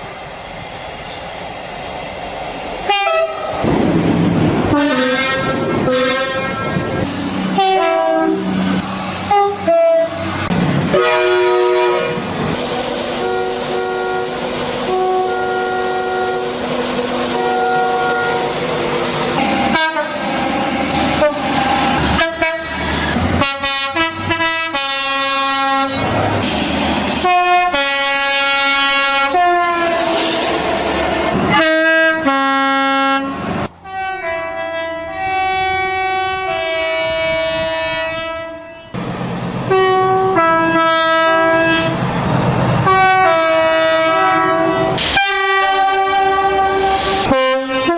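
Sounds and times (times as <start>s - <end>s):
trains running on rails: 0.0s - 47.9s
two-tone train horns: 2.8s - 3.7s, 4.7s - 12.4s, 13.2s - 16.7s, 17.3s - 18.6s, 19.4s - 26.1s, 27.1s - 30.1s, 31.4s - 39.0s, 39.6s - 42.0s, 42.8s - 47.9s.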